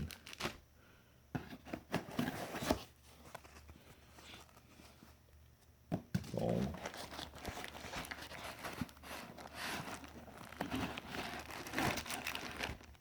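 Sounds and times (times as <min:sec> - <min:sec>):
packing material crinkling: 0:00.0 - 0:00.6, 0:06.3 - 0:13.0.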